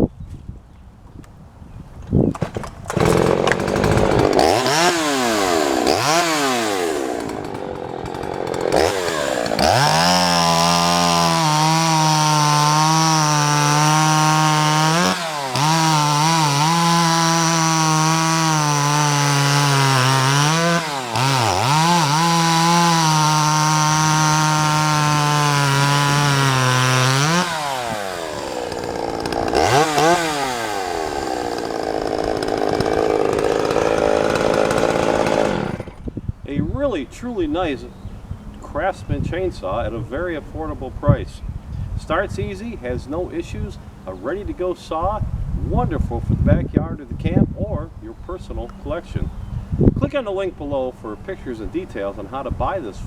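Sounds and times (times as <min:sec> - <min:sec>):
chainsaw engine revving: 0:02.4 - 0:36.1.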